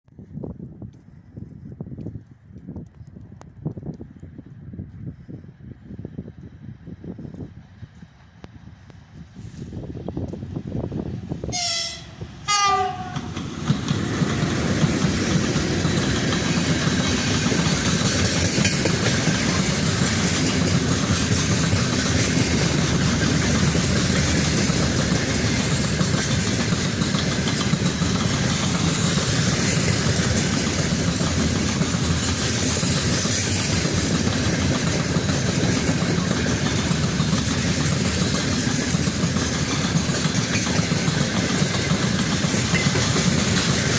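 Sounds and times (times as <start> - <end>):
freight train rumbling on rails: 0.1 - 43.9
locomotive horn blasts: 11.5 - 13.3.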